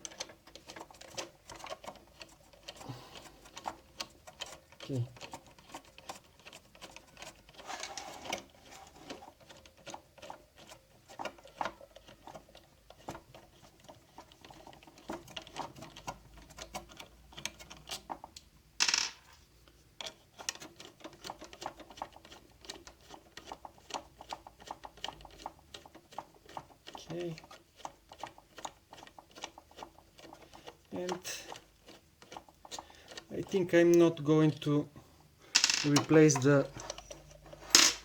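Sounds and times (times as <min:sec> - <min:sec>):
tools and parts clicking: 0:00.0 - 0:19.4, 0:35.5 - 0:38.0.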